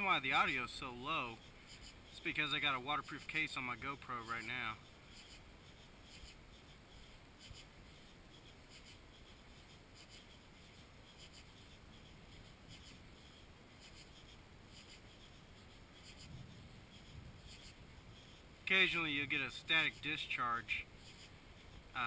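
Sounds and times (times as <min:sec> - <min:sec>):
faint scratchy ticks: 0:00.0 - 0:22.0.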